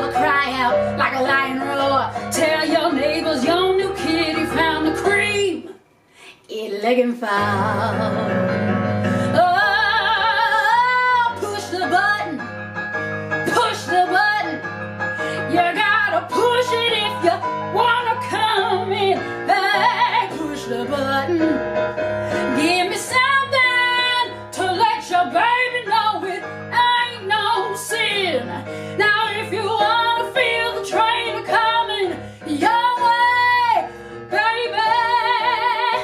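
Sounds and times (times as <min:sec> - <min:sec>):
woman singing with vibrato: 0:06.5 - 0:08.3, 0:15.5 - 0:21.6, 0:22.5 - 0:36.0.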